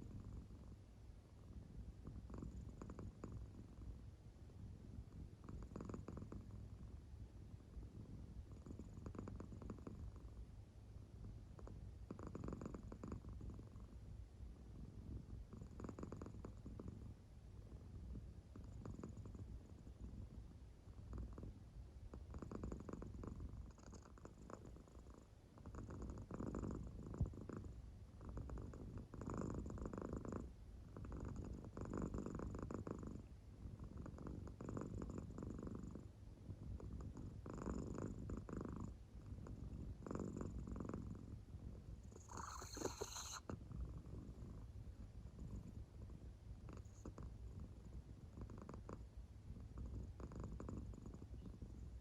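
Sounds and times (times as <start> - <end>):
cat purring and snoring: 0.0 - 0.8, 1.4 - 3.9, 4.7 - 7.0, 7.6 - 10.4, 11.2 - 14.0, 14.7 - 52.0.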